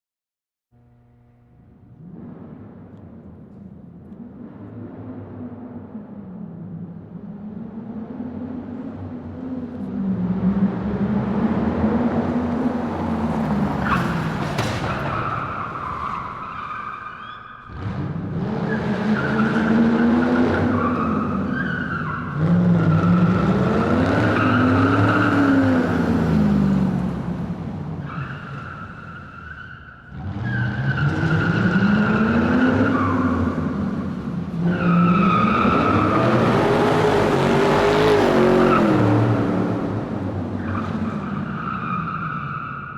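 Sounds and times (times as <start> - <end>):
car engine revving: 0.8 - 42.4
car tyres squealing: 12.4 - 27.1, 27.7 - 42.9.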